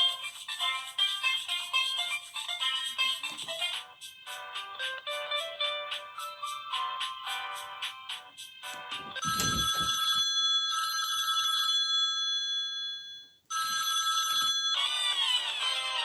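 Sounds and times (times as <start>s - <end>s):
sliding ringtone tune: 8.4s - 16.0s
phone ringtone bell tones: 9.0s - 16.0s.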